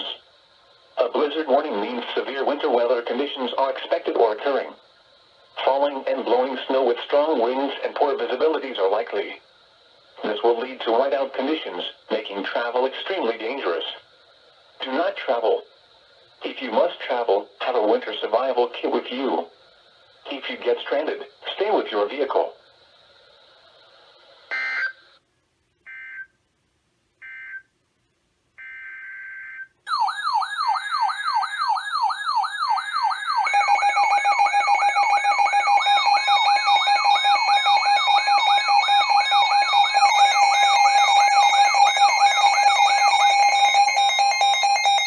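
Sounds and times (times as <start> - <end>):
warbling data bursts: 0.0 - 25.2
electronic alarm falling sweeps: 24.5 - 25.1, 25.9 - 26.4, 27.2 - 27.7, 28.6 - 45.0.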